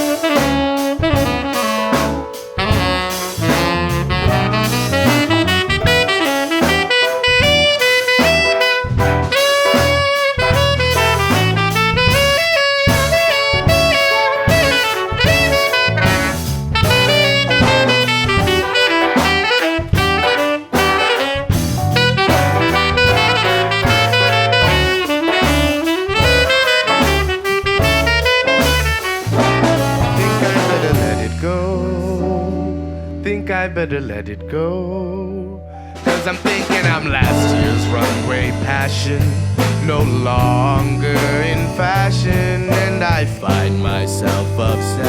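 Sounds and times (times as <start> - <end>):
drum kit: 0.0 - 32.8, 36.0 - 45.0
saxophone solo: 0.0 - 33.9
bass: 0.0 - 45.0.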